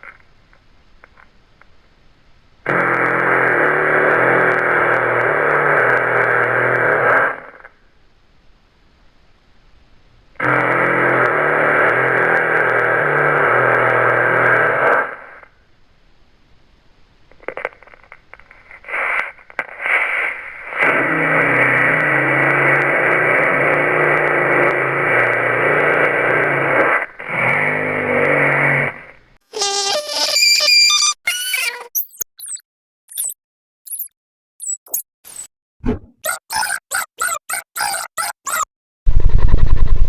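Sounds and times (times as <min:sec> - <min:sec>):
frog buzzing call: 0:29.5 - 0:32.2.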